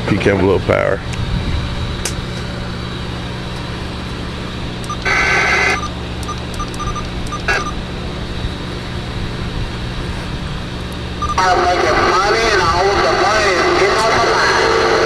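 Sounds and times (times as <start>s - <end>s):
radio static with low hum: 4.8s - 8.1s, 11.2s - 15.0s
electronic tones burst: 4.9s - 7.8s, 11.2s - 14.4s
short radio beeps: 4.9s - 7.8s, 11.2s - 11.7s.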